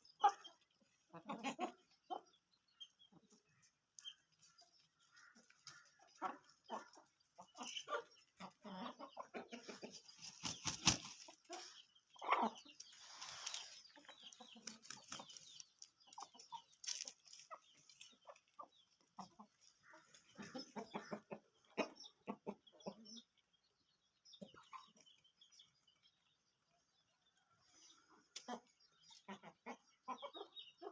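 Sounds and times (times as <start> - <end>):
chickens clucking: 0.0 - 30.9.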